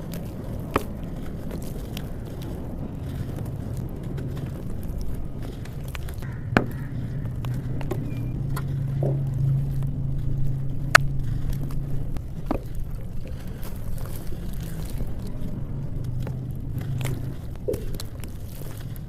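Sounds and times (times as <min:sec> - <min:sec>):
dry dirt crumbling: 0:00.0 - 0:19.0
low steady hum: 0:00.0 - 0:19.0.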